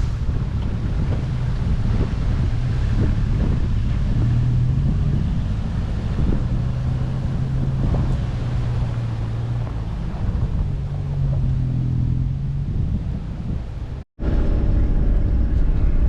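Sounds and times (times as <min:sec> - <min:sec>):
low rumble: 0:00.0 - 0:16.0
vehicle engine droning: 0:00.0 - 0:16.0.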